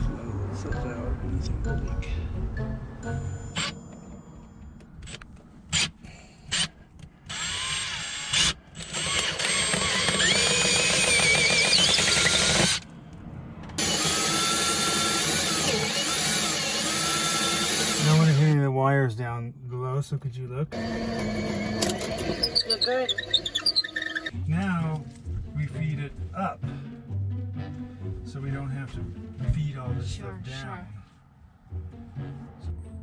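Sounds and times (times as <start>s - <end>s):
power drill drilling: 5.1s - 12.8s, 13.8s - 18.6s, 20.8s - 24.3s.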